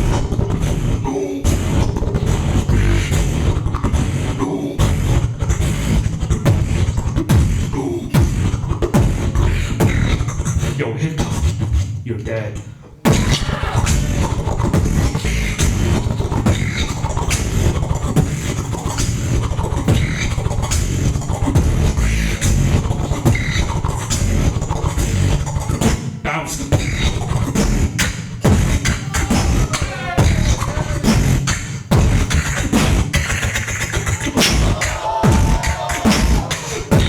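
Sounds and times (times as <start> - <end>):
beatboxing into a microphone: 0.0 - 37.0
wavering pitched vocal line: 13.2 - 37.0.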